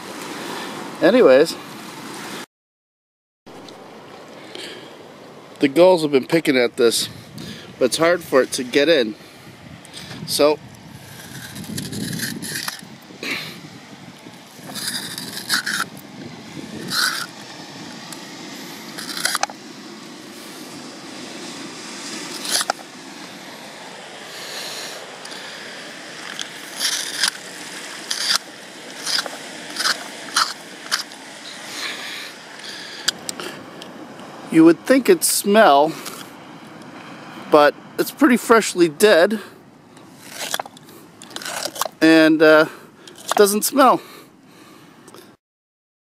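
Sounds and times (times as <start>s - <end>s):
knife sawing through hide: 11.0s - 12.8s, 14.6s - 16.0s, 16.7s - 17.4s, 19.0s - 19.5s, 22.2s - 22.8s, 26.6s - 31.2s, 40.2s - 40.7s, 41.3s - 42.2s.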